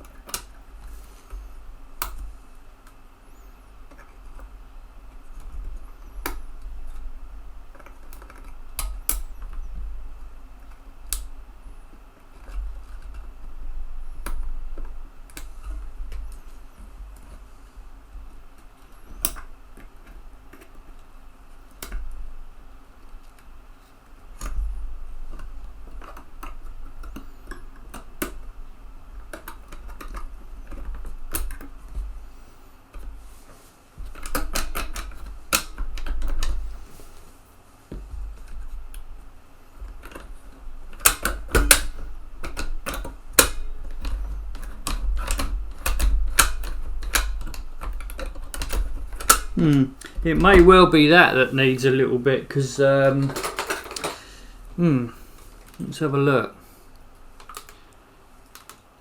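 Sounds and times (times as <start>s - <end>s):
faint steady hum: 0.0s - 59.0s
low handling rumble: 48.8s - 53.5s.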